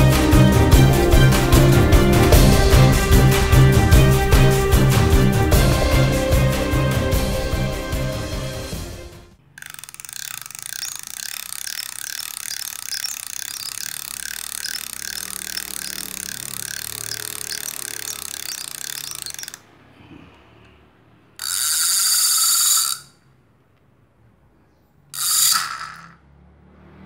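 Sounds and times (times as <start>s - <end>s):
fishing reel ratcheting clicks: 9.6s - 19.7s, 21.4s - 23.2s, 25.2s - 26.2s.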